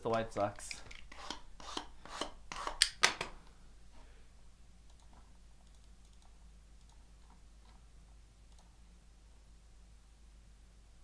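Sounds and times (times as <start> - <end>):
low steady hum: 0.0 - 11.0
faint small clicks: 4.8 - 7.8, 8.5 - 8.8.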